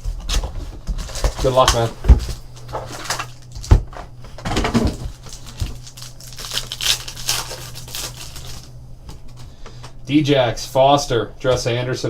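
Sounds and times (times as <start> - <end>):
plastic wrapping crinkling and tearing: 0.3 - 4.0, 4.6 - 8.7.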